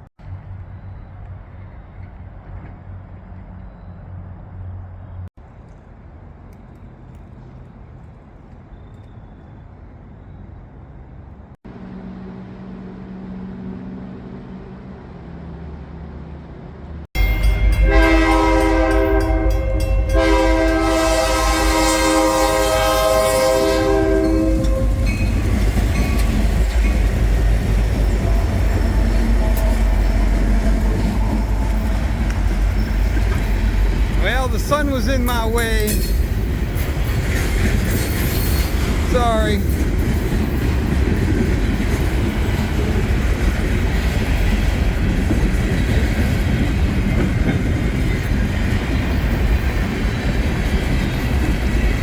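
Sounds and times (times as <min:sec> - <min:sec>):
train rumble: 0:00.0 - 0:52.0
train air horn blasts: 0:17.7 - 0:25.2.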